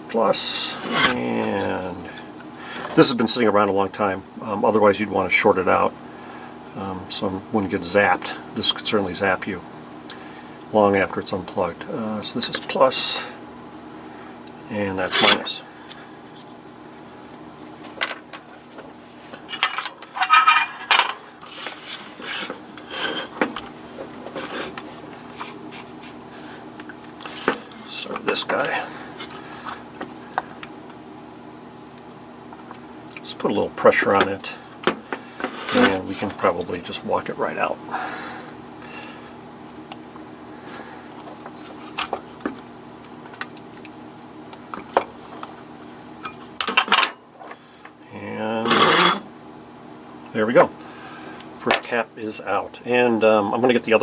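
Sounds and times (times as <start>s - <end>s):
steady low hum: 0.0s - 54.0s
tools scraping on workbench: 0.8s - 1.2s, 19.6s - 23.6s, 24.3s - 24.8s, 48.7s - 49.3s
metal ringing: 20.2s - 21.1s.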